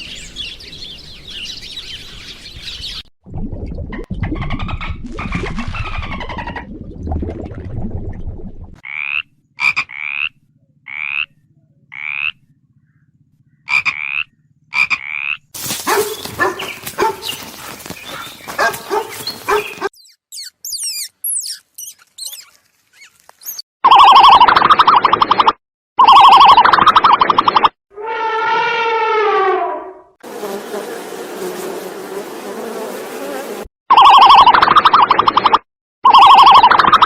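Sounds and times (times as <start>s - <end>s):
animal calls: 8.9s - 23.6s
high chirps: 19.5s - 25.2s.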